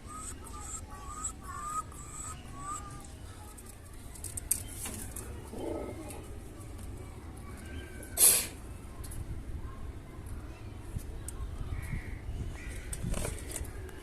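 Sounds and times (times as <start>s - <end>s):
pigeon coo: 0.0s - 3.0s, 5.5s - 6.2s
pigeon peeps: 0.0s - 3.2s.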